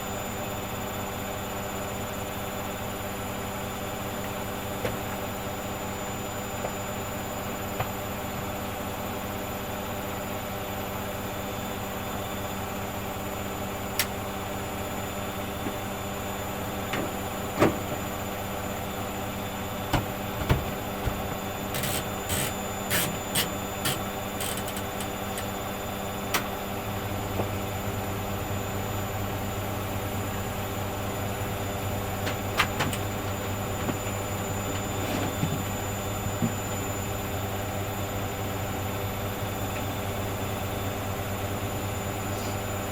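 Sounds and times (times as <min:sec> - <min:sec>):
washing machine motor hum: 0:00.2 - 0:42.9
knocks in washing machine: 0:16.9 - 0:18.1, 0:19.9 - 0:21.5.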